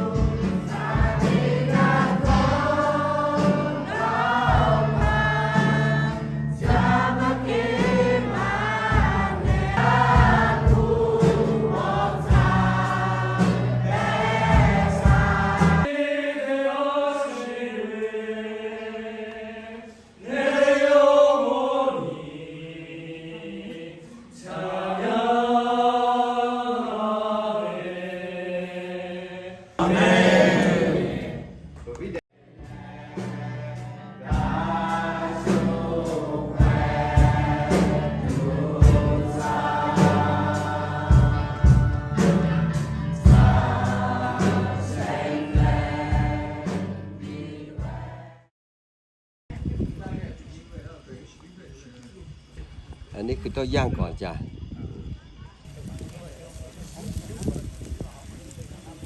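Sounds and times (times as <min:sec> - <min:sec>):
low instrumental accompaniment: 0:00.0 - 0:15.9, 0:32.6 - 0:46.9
choir singing a hymn: 0:00.0 - 0:31.8, 0:32.4 - 0:48.5.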